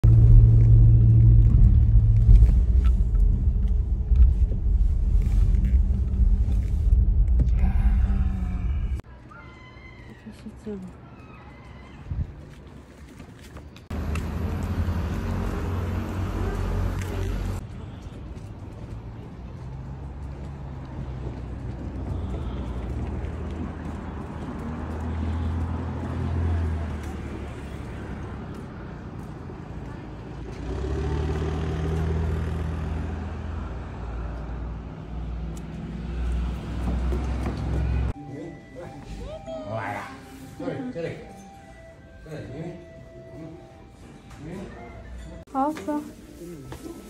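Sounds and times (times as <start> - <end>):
vehicle engine rumbling: 0.0 - 9.1, 12.1 - 38.2
road noise: 0.0 - 47.0.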